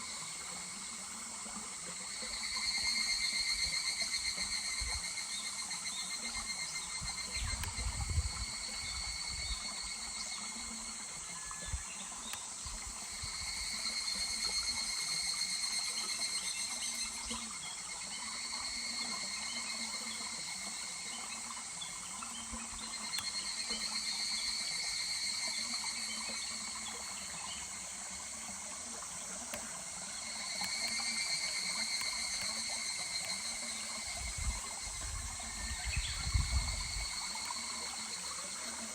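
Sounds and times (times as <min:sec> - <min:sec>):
cicadas calling: 0:00.0 - 0:38.9
small stream murmuring: 0:00.0 - 0:38.9.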